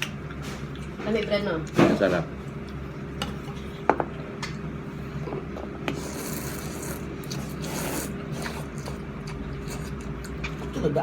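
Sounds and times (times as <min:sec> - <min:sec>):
steady background hum: 0:00.0 - 0:11.0
slurping noodles: 0:05.9 - 0:09.0.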